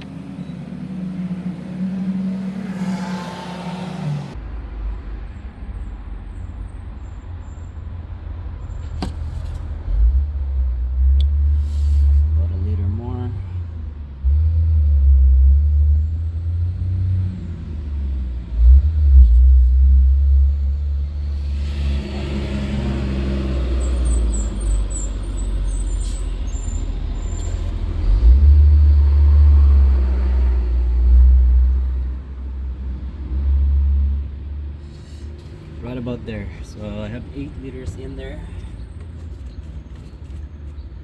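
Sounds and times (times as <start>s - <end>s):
vehicle passing: 0.0s - 25.7s
road traffic rumble: 0.0s - 41.0s.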